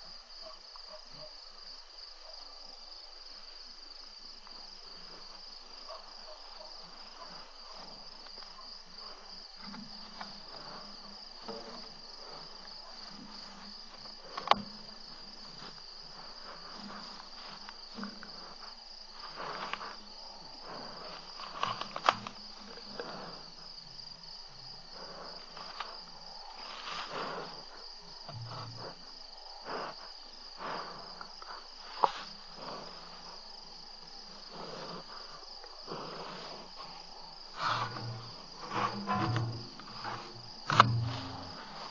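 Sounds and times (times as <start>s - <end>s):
crickets chirring: 0.0s - 41.9s
rustles and knocks: 36.9s - 41.9s.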